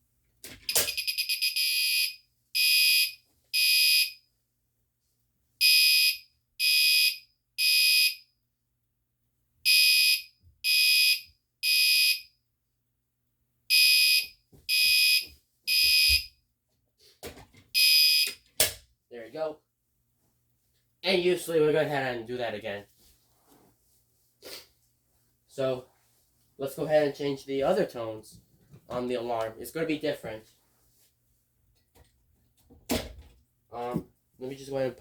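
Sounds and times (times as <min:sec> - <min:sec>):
fire alarm horn beeping: 0:00.7 - 0:04.2, 0:05.6 - 0:08.2, 0:09.7 - 0:12.3, 0:13.7 - 0:16.3, 0:17.8 - 0:18.4.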